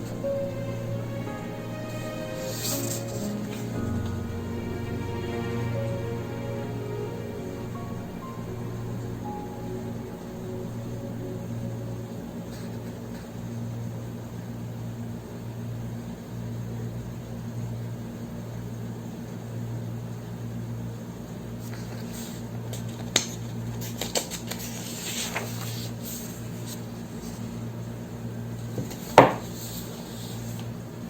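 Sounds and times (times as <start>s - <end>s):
low hum: 0.0s - 15.1s.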